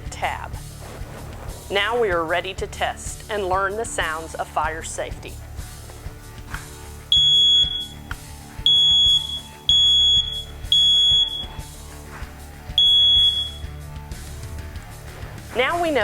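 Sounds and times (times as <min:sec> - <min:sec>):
smoke alarm beeping: 0:07.0 - 0:11.8, 0:12.7 - 0:13.8.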